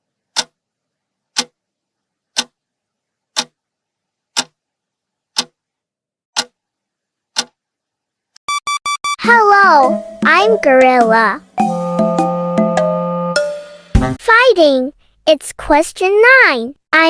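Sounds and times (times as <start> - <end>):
clock ticking: 0.4 - 0.6.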